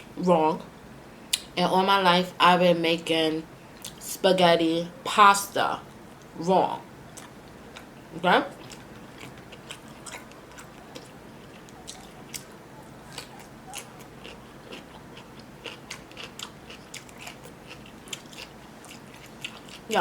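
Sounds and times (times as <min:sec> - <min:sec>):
person chewing food: 0:07.1 - 0:20.0.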